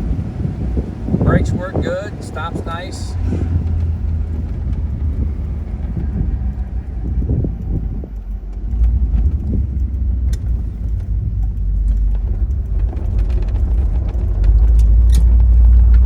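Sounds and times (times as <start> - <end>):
car engine running: 0.0 - 16.0.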